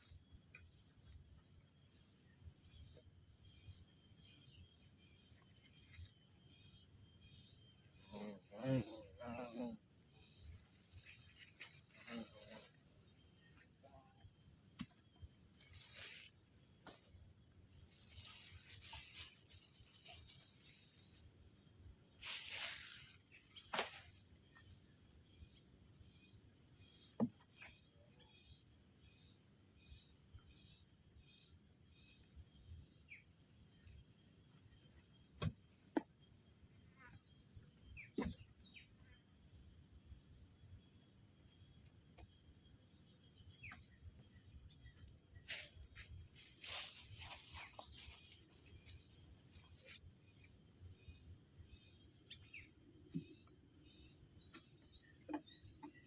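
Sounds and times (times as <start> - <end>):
faint bird chirps: 0.0 - 16.8.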